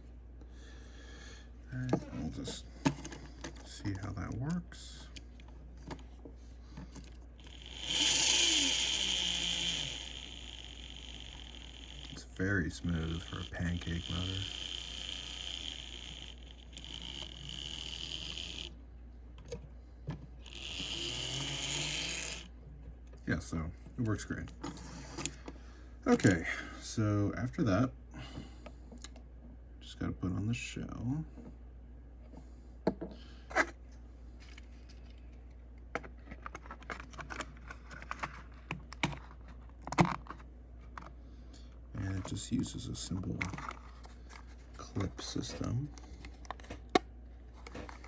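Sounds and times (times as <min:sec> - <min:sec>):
model locomotive motor whirring: 0:07.0 - 0:18.8, 0:20.4 - 0:22.5.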